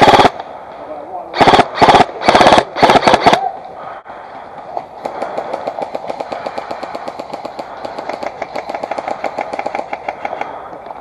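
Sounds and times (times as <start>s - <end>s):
airsoft guns rapid firing: 0.0s - 0.4s, 1.4s - 3.5s, 4.9s - 10.7s.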